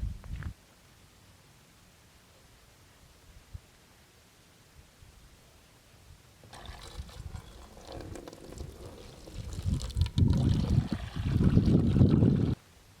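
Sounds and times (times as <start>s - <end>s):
running splashing water: 6.5s - 12.5s.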